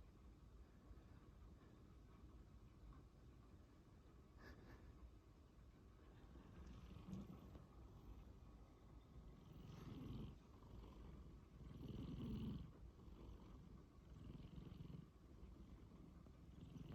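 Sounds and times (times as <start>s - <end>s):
cat snoring faintly: 6.2s - 16.9s.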